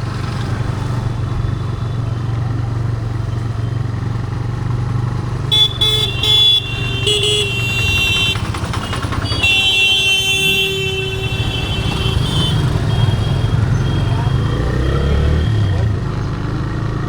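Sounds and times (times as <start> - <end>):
motorcycle engine running: 0.0 - 17.0
vehicle horn honking: 5.5 - 14.9.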